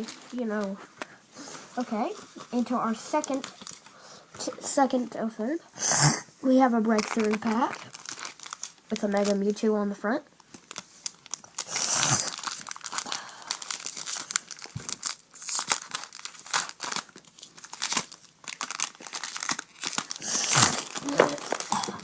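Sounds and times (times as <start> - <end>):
foil wrapper crinkling and tearing: 1.8 - 4.0, 6.9 - 9.6, 10.4 - 22.0.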